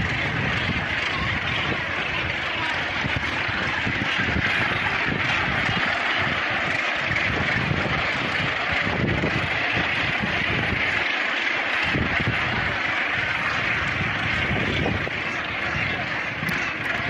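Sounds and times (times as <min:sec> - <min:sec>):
wind on microphone: 0:00.0 - 0:11.0, 0:11.8 - 0:17.0
seabird colony calling: 0:00.0 - 0:17.0.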